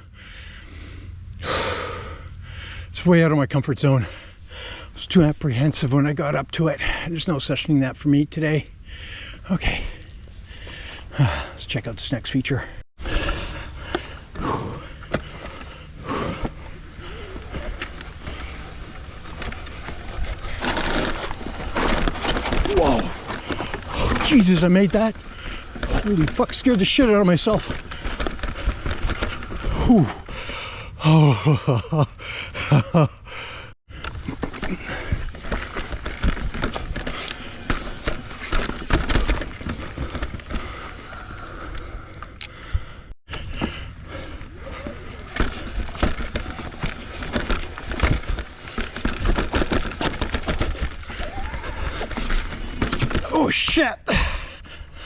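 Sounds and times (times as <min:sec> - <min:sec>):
bike tyres on dirt and rock: 0:12.6 - 0:32.0, 0:33.9 - 0:55.0
bike knocking and rattling: 0:13.1 - 0:30.6, 0:33.9 - 0:53.9.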